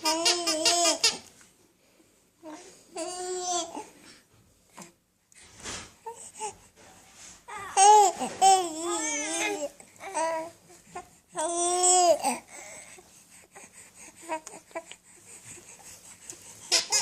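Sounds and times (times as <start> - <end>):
baby babbling and cooing: 0.0 - 1.3, 2.4 - 4.0, 7.5 - 12.8, 14.1 - 15.0, 16.7 - 17.0.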